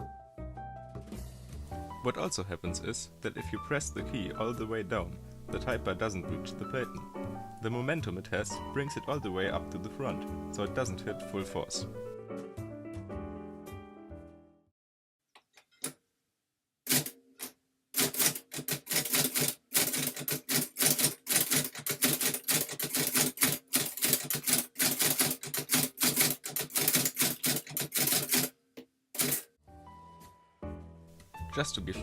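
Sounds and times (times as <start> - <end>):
typewriter keystrokes: 16.9 - 28.5, 29.2 - 29.4.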